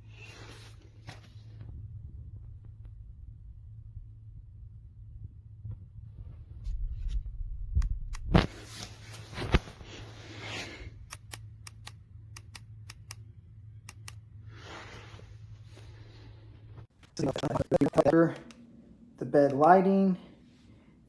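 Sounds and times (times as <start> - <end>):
low steady hum: 0.0 - 21.0
rustling handling noise: 8.4 - 10.9
sharp clicks: 11.0 - 14.2.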